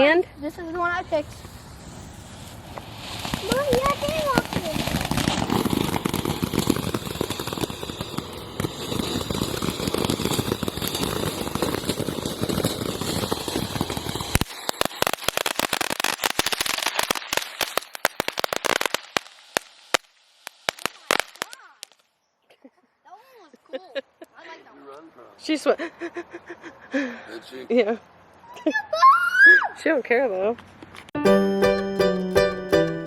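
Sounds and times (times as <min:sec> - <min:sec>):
firework crackling: 0:00.0 - 0:22.1
firework sharp pops: 0:01.2 - 0:22.1.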